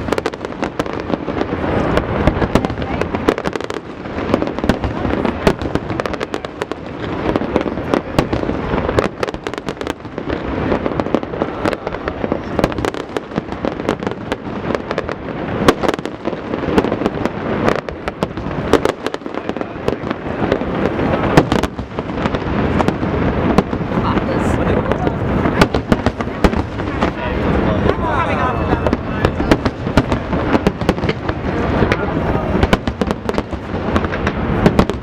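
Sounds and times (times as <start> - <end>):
fireworks bangs and crackling: 0.0 - 35.0.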